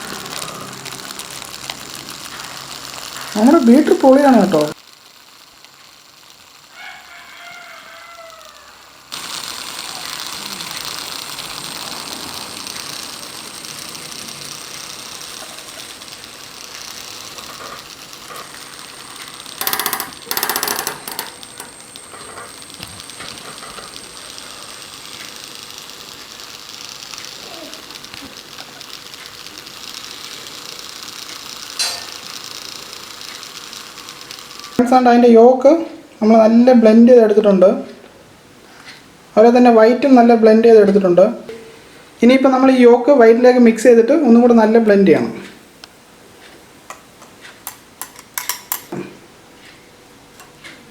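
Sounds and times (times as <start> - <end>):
electric hand beater whipping: 0.0 - 34.8.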